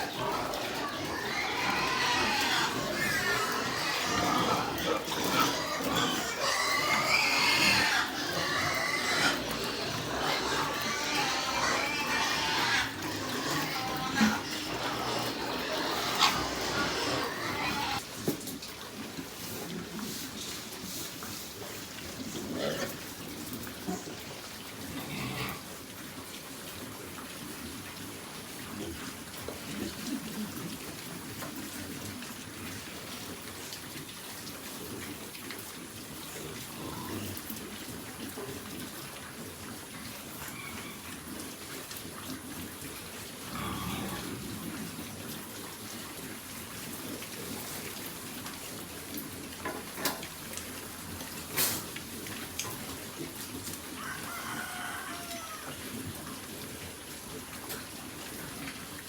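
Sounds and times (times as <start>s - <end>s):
animal calls: 0.0s - 18.0s.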